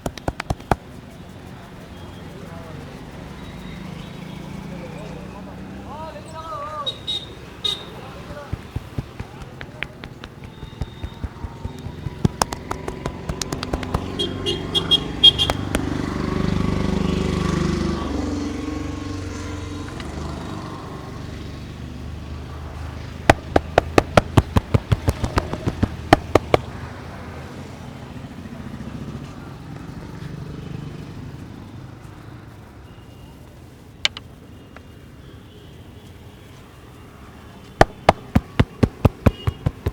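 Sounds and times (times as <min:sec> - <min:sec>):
sharp hand strikes: 0:00.0 - 0:00.8, 0:08.3 - 0:14.3, 0:15.3 - 0:16.0, 0:23.3 - 0:26.7, 0:37.8 - 0:39.9
street traffic: 0:00.0 - 0:39.9.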